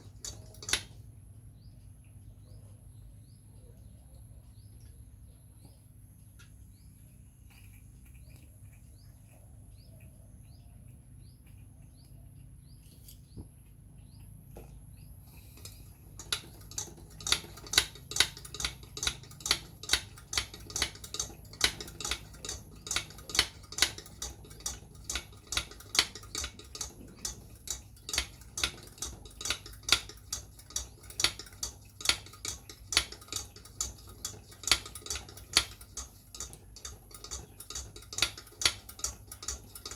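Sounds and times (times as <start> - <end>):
hand air pump clicking: 15.6 - 39.9.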